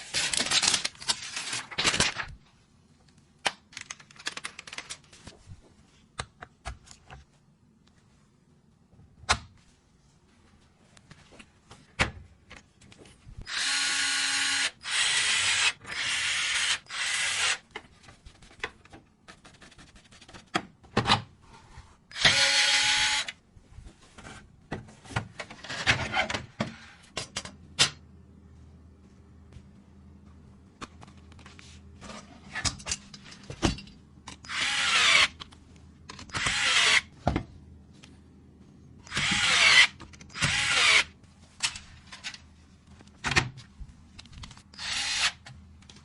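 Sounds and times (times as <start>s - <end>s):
electric screwdriver driving screws: 13.5s - 17.6s, 22.1s - 23.3s, 36.3s - 37.1s, 39.1s - 41.1s, 44.8s - 45.4s.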